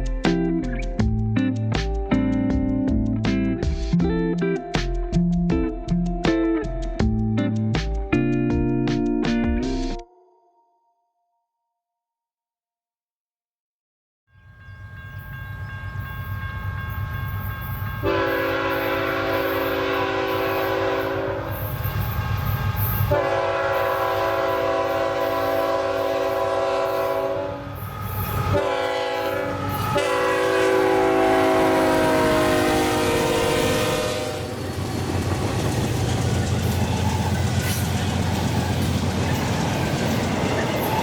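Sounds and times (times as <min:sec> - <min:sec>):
diesel locomotive engine rumble: 0:14.6 - 0:41.0
train horn blasts: 0:16.8 - 0:41.0.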